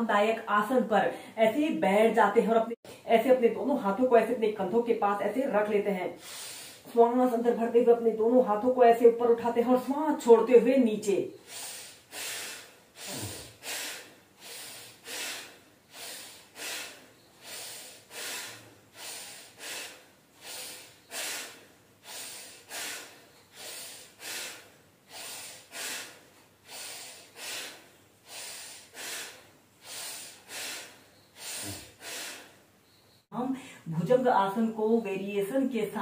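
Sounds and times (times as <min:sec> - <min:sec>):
woman breathing forcefully: 0:06.2 - 0:06.9, 0:11.4 - 0:32.7.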